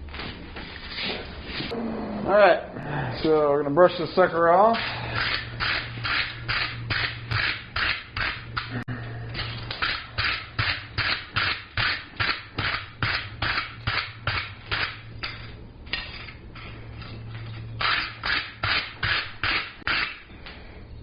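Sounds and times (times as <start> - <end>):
wire brush scrubbing steel: 4.2 - 8.8, 17.8 - 20.3.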